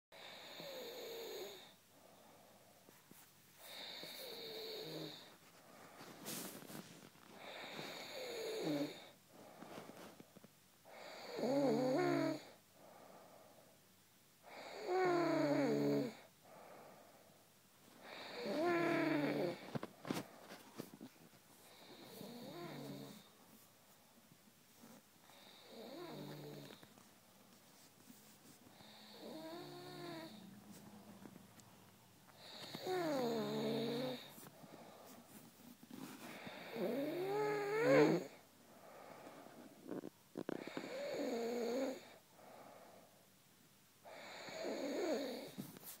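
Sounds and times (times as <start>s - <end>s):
snoring: 0.2s - 1.8s, 3.6s - 5.3s, 7.4s - 9.8s, 10.9s - 12.6s, 14.5s - 16.3s, 18.0s - 19.8s, 21.7s - 23.3s, 24.8s - 26.8s, 28.7s - 30.5s, 32.4s - 34.9s, 35.9s - 43.0s, 44.0s - 45.6s
person snoring: 7.4s - 9.2s, 18.0s - 19.8s, 21.7s - 23.3s, 25.3s - 26.8s, 28.8s - 30.6s, 32.4s - 34.3s, 36.3s - 38.4s.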